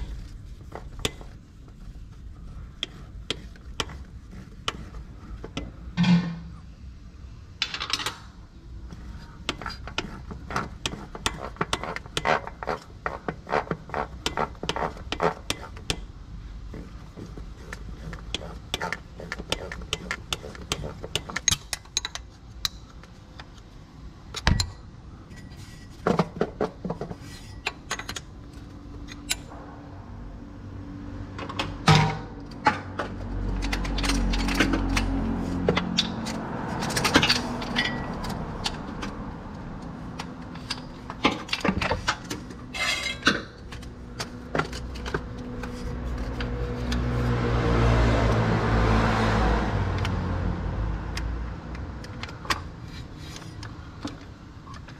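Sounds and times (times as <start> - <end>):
low rumble: 29.5 - 31.4.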